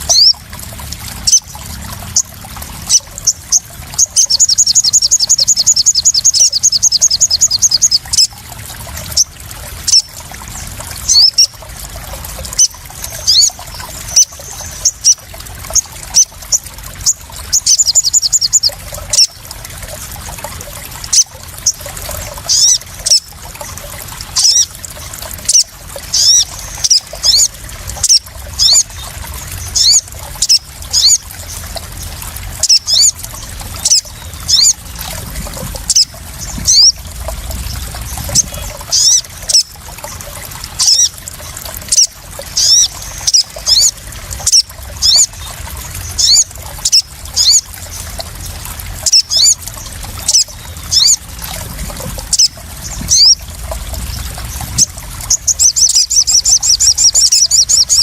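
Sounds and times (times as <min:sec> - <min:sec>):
bird chirping and trilling: 0:00.0 - 0:58.0
water splashing and trickling: 0:00.0 - 0:58.0.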